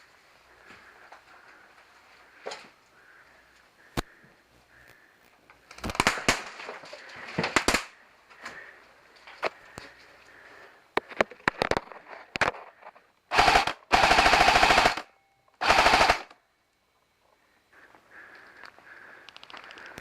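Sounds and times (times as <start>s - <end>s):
airsoft gun shots: 13.3s - 16.3s.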